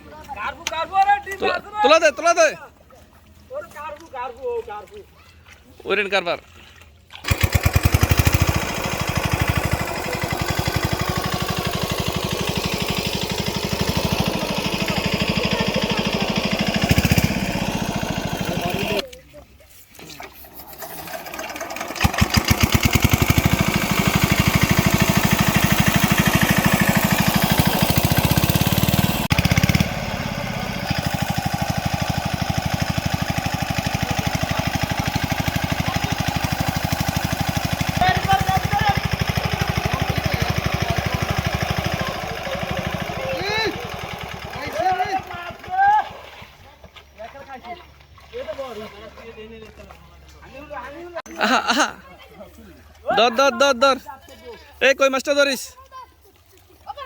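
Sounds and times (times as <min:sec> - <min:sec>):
small engine running: 0:07.2 - 0:19.1, 0:20.4 - 0:49.2.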